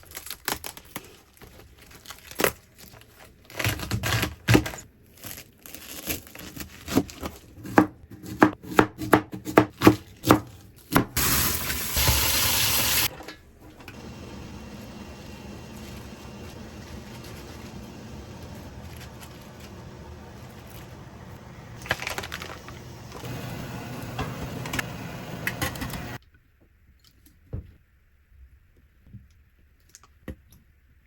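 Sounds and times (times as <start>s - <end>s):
knife chopping vegetables: 6.8s - 11.4s.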